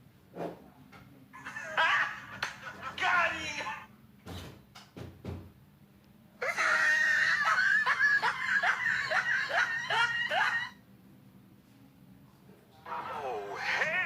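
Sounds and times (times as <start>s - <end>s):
high-pitched laughter: 1.4s - 3.0s, 6.4s - 10.8s, 13.2s - 14.0s.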